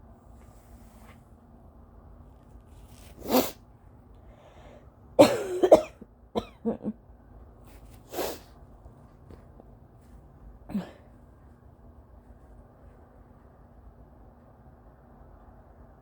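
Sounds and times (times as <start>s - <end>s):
dry coughing: 5.2s - 7.0s, 10.7s - 11.1s.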